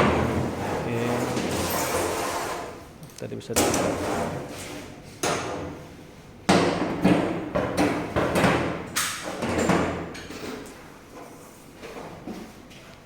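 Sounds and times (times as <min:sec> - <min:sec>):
knocks and thuds in large room: 0:00.0 - 0:01.7, 0:05.2 - 0:10.3.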